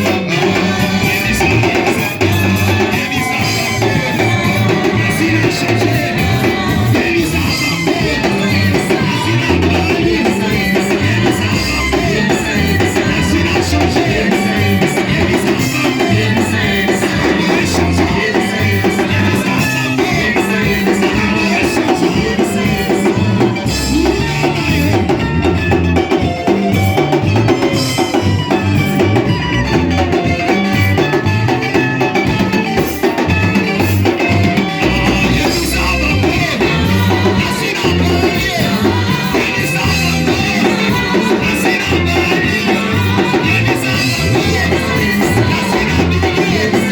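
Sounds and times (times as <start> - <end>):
drum kit beat: 0.0 - 46.9
person singing: 0.0 - 46.9
worship band playing: 0.0 - 46.9.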